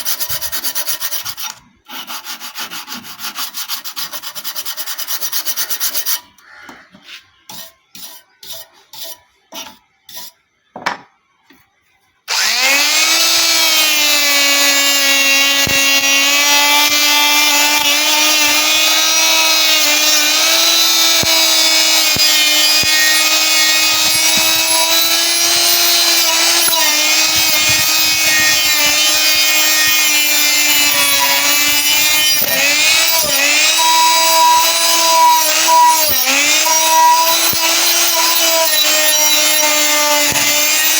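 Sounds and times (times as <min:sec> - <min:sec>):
rubbing strokes on metal: 0:00.0 - 0:06.2, 0:20.0 - 0:40.9
electric grinder whining: 0:12.3 - 0:40.9.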